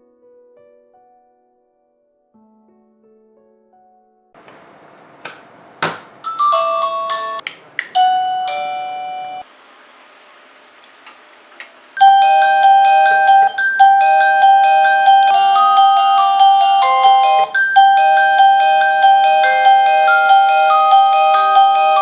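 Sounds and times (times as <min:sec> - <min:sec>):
doorbell electronic chime tune: 0:06.2 - 0:07.4, 0:08.0 - 0:09.5, 0:12.0 - 0:22.0.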